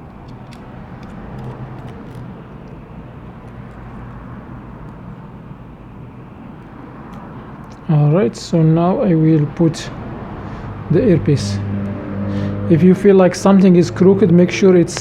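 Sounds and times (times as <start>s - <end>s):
faint clicks of small parts: 0.0s - 2.8s
low background rumble: 0.0s - 15.0s.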